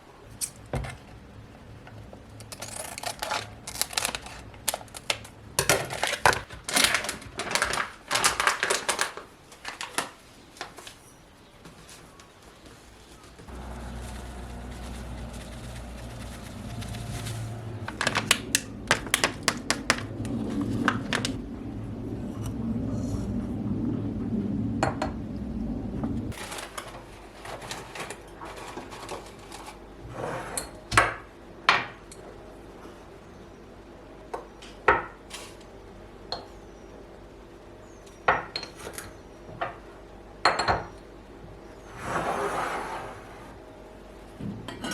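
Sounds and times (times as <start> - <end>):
steady low rumble: 13.5 - 26.4
dishes and cutlery clattering: 44.7 - 44.9.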